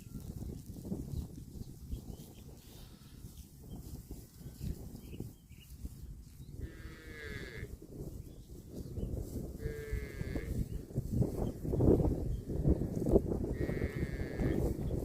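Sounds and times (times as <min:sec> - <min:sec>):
cow mooing: 0:06.6 - 0:07.7, 0:13.6 - 0:14.6.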